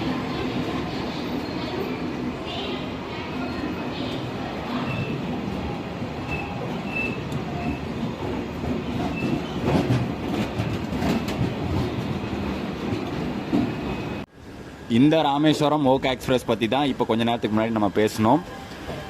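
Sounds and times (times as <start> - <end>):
train rumbling on rails: 0.0 - 15.6.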